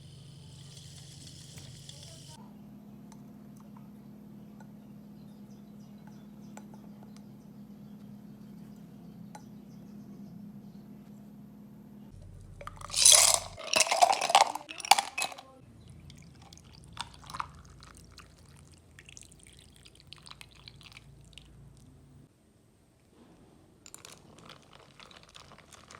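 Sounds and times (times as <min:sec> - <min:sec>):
liquid poured into a glass: 0:12.6 - 0:15.4, 0:16.1 - 0:21.5, 0:23.9 - 0:25.9.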